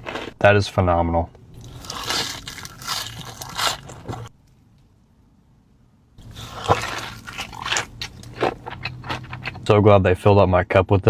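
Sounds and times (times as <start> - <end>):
crunching and chewing food: 1.6 - 4.4, 6.2 - 9.7.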